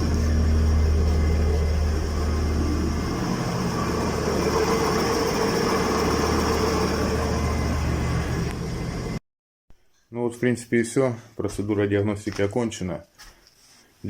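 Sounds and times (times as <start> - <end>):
car engine running: 0.0 - 9.2.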